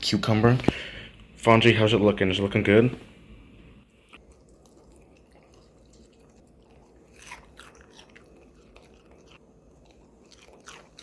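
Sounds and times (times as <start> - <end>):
dog chewing food: 4.2 - 11.0.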